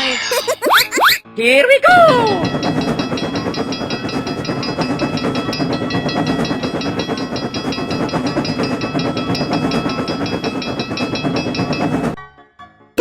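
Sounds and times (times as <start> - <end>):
train rumbling on track: 1.9 - 12.2
railroad crossing bell ringing: 2.0 - 12.2.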